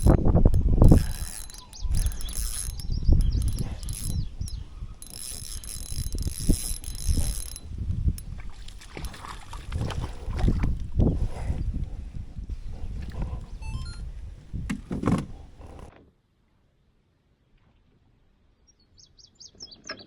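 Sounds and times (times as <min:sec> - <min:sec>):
fishing reel whirring and clicking: 0:00.0 - 0:09.3
wind buffeting microphone: 0:00.0 - 0:15.9.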